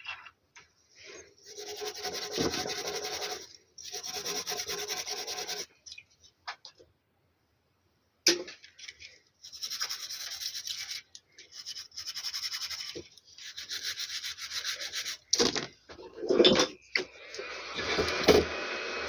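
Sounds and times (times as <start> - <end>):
scratchy rubbing on hard surface: 1.4 - 5.7, 9.4 - 15.3.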